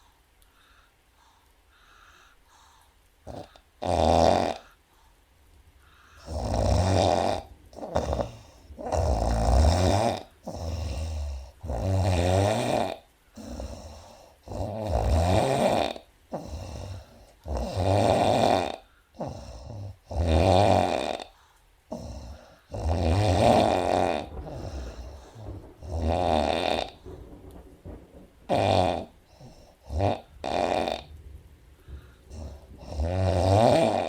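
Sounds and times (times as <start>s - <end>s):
woman snoring: 3.3s - 4.8s, 6.1s - 27.1s, 28.5s - 31.2s, 32.0s - 34.0s.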